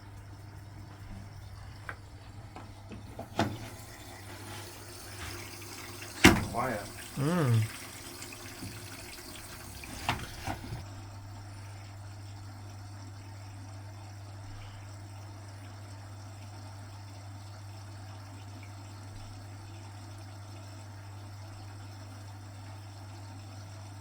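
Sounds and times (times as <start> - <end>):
steady low hum: 0.0 - 8.4
washing machine filling with water: 0.0 - 24.0.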